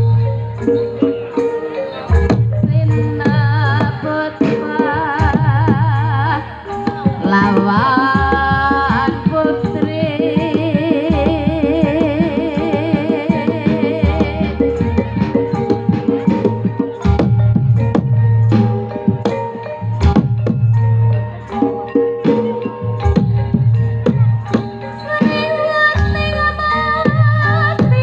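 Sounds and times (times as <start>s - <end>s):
drum strokes: 0.0s - 28.0s
held metallophone tones: 0.0s - 28.0s
person singing with vibrato: 1.8s - 15.5s.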